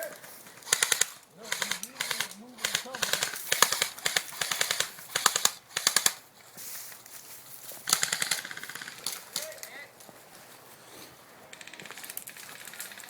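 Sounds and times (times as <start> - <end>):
airsoft guns firing bursts: 0.0 - 6.3, 7.8 - 9.9, 11.5 - 13.0.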